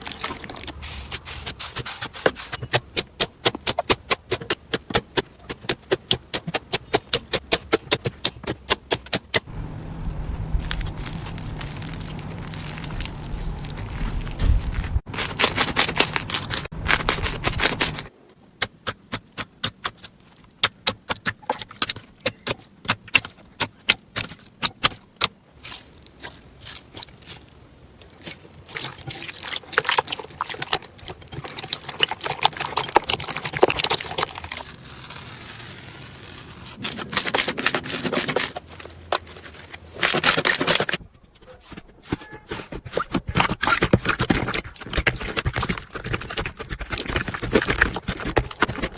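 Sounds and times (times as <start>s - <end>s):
slime crackling and popping: 8.9s - 18.1s, 22.2s - 38.6s.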